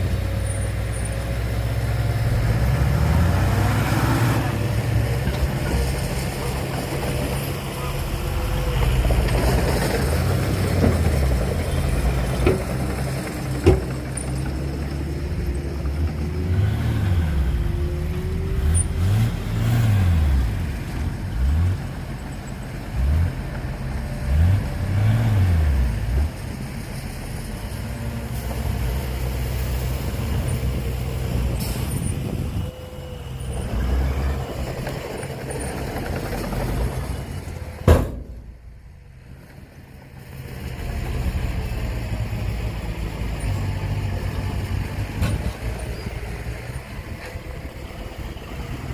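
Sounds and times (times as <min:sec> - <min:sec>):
heavy diesel engine revving: 0:00.0 - 0:22.2, 0:22.9 - 0:26.7, 0:27.7 - 0:38.7
sharp knocks: 0:37.8 - 0:38.5.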